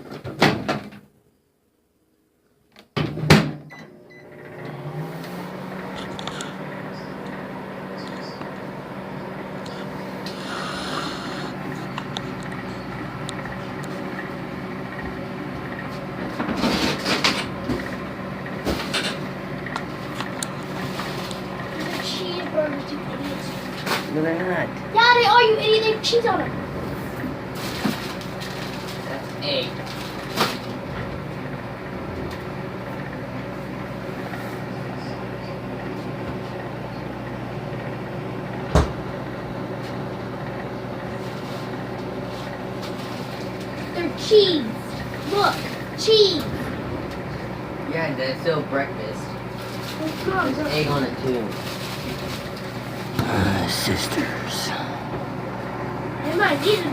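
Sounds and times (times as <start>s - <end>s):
microwave oven humming: 0.0s - 56.9s.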